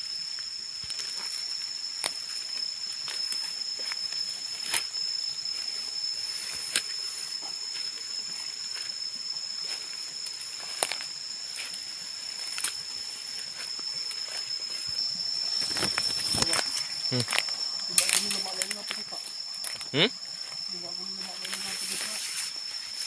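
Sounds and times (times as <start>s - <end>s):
high-pitched insect drone: 0.0s - 23.0s
sharp snaps and crackles: 0.8s - 2.4s, 3.0s - 4.9s, 6.5s - 7.0s, 10.2s - 11.8s, 12.4s - 12.8s, 15.6s - 20.0s.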